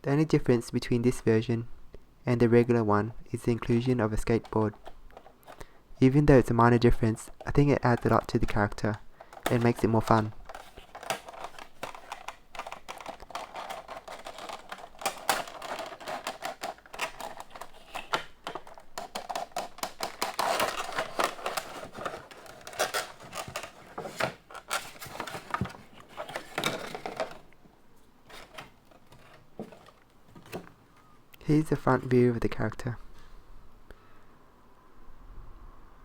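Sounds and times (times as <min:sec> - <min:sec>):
packaging clicking and rustling: 0:03.7 - 0:05.8, 0:07.1 - 0:27.6, 0:28.2 - 0:31.2.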